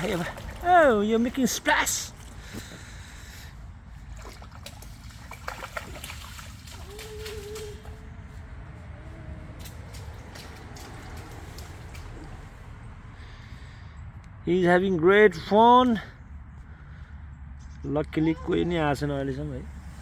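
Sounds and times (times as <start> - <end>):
small splashes in puddle: 0.0 - 3.0, 4.0 - 8.4, 9.4 - 12.8
trickling water: 0.0 - 13.7
steady low rumble: 2.0 - 15.4.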